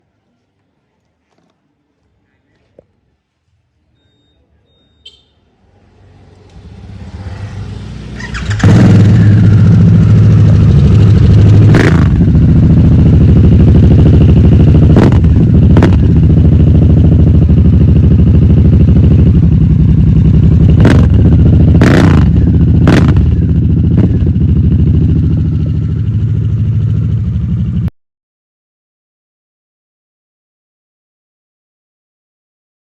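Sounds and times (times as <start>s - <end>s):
motorcycle engine idling and revving: 5.1s - 27.9s.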